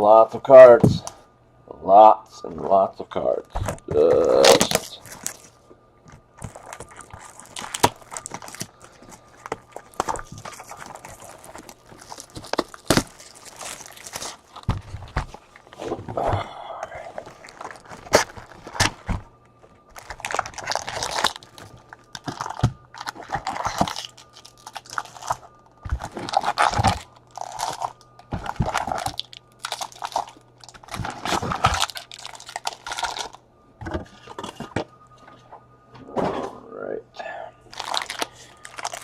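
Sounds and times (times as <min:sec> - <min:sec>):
wrappers crinkling and tearing: 0:04.0 - 0:05.6, 0:06.3 - 0:15.9, 0:17.1 - 0:33.4, 0:37.7 - 0:39.0.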